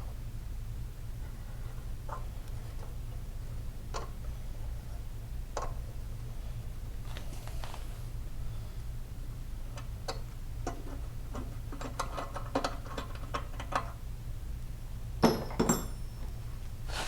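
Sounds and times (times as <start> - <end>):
steady low hum: 0.0 - 11.4.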